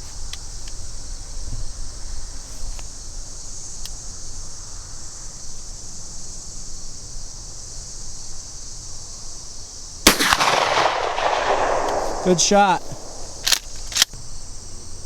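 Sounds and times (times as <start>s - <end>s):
wind rumble on microphone: 0.0s - 3.1s
faint clicks: 11.5s - 14.2s.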